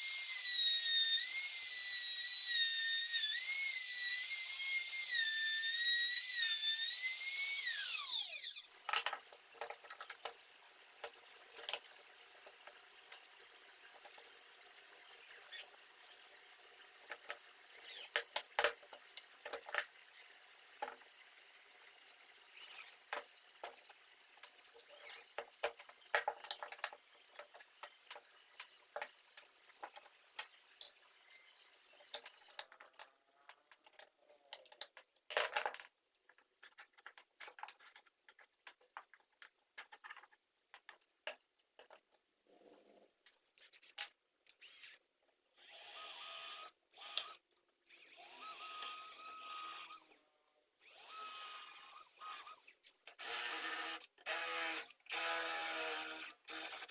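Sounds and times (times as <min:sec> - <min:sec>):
small power tool running: 0:45.6 - 0:50.1, 0:50.8 - 0:56.9.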